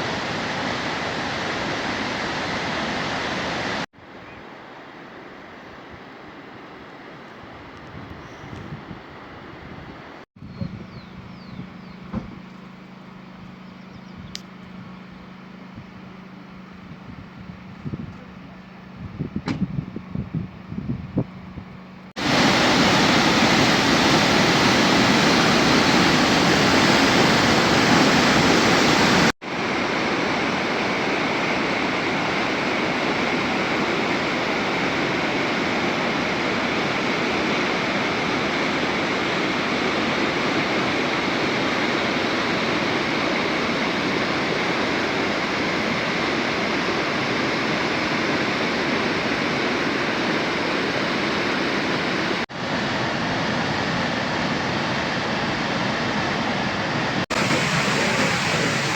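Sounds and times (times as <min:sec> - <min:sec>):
waterfall rushing: 0:00.0 - 0:03.9, 0:22.2 - 0:58.9.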